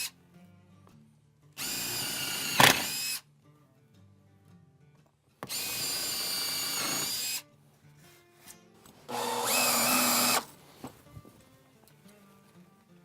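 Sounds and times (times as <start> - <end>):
power drill whining: 1.6 - 3.2, 5.4 - 7.4, 9.1 - 10.5.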